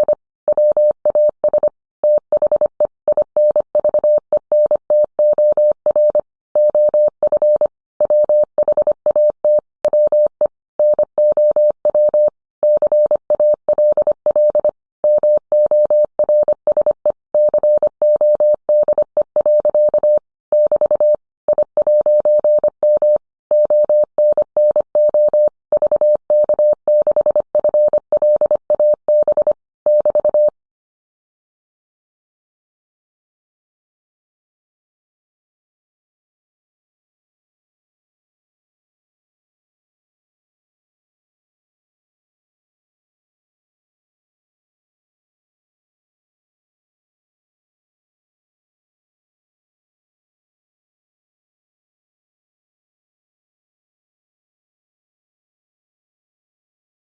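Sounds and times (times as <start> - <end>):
morse code beeps: 0.0 - 30.6.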